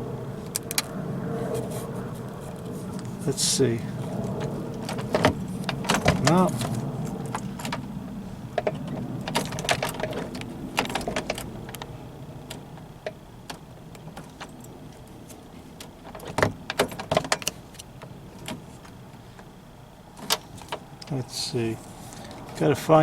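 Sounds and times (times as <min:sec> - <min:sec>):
light clicks and small rattles: 0:02.2 - 0:19.5.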